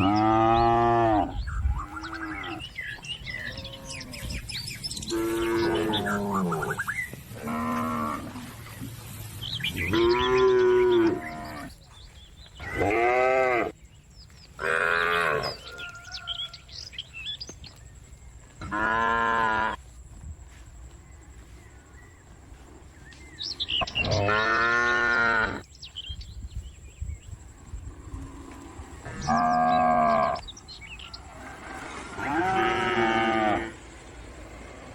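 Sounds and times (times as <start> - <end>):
cows mooing: 0.0 - 4.4, 5.0 - 8.6, 9.8 - 11.8, 12.6 - 13.8, 14.6 - 15.6, 18.6 - 19.8, 23.8 - 25.6, 28.4 - 30.4, 31.5 - 33.8.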